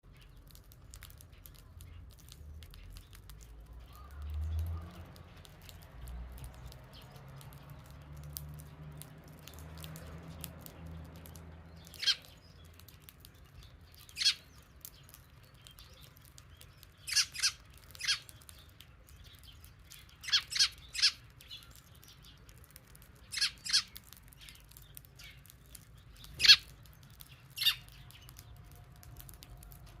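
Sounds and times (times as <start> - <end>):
sparrows chirping: 0.0 - 30.0.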